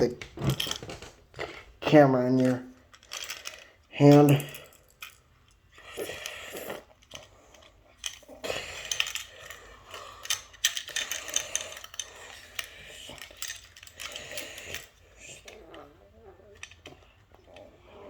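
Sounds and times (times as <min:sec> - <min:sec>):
metal keys clinking: 0:00.0 - 0:01.1, 0:02.4 - 0:05.7, 0:08.0 - 0:15.7.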